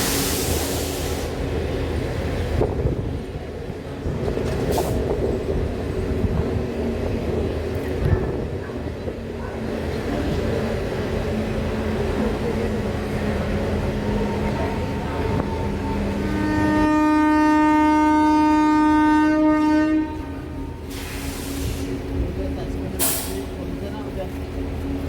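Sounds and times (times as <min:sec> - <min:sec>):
train rail and wheel noise: 0:00.0 - 0:25.0
locomotive horn blast: 0:15.3 - 0:21.1.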